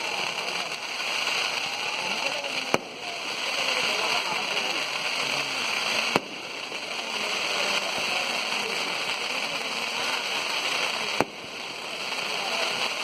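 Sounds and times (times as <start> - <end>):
fireworks hissing: 0.0 - 13.0
sharp firework bang: 2.6 - 3.1, 6.0 - 6.6, 11.1 - 11.6.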